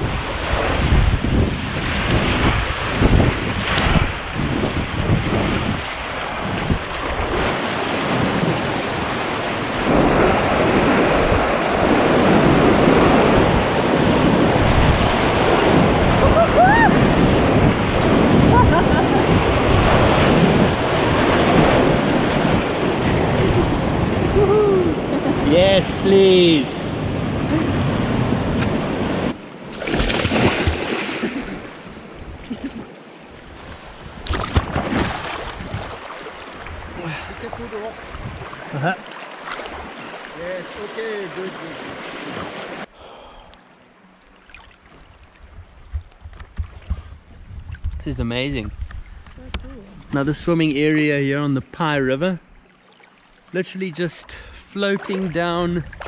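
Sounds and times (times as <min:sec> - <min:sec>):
wind buffeting microphone: 0:00.0 - 0:29.4, 0:33.4 - 0:38.9, 0:45.0 - 0:50.8, 0:55.1 - 0:56.0
rushing river water: 0:00.0 - 0:46.0, 0:52.0 - 0:56.0
small water splashes: 0:29.7 - 0:31.8, 0:34.2 - 0:42.9, 0:44.2 - 0:46.8, 0:52.6 - 0:53.7, 0:54.8 - 0:56.0.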